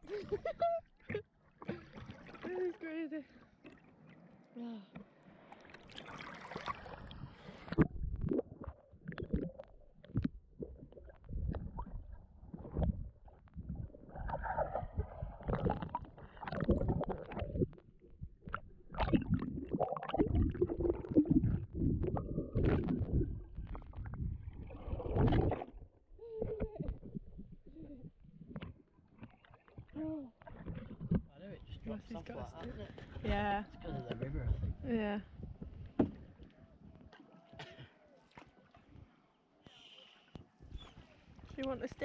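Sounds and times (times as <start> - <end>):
water rumbling around boat: 0.0 - 39.3
muffled knocks on boat: 35.6 - 36.3.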